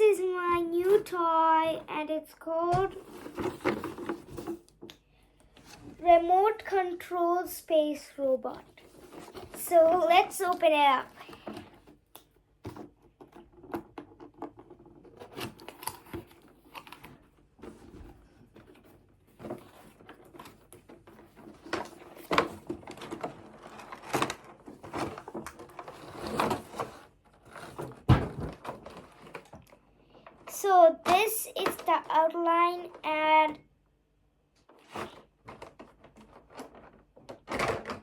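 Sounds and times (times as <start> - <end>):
packaging rustling and scraping: 2.6 - 4.7, 8.5 - 12.0, 12.7 - 30.5, 34.7 - 38.0.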